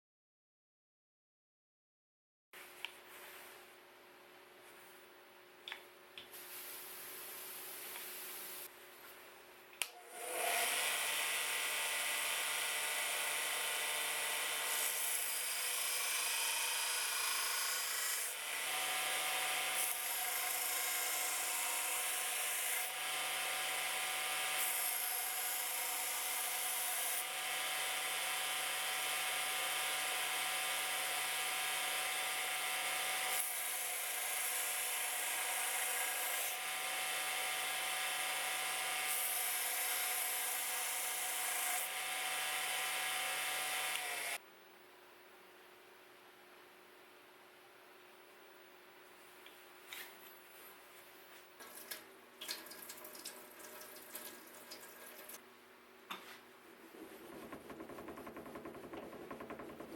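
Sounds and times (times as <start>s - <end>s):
power tool humming: 9.9s - 44.4s.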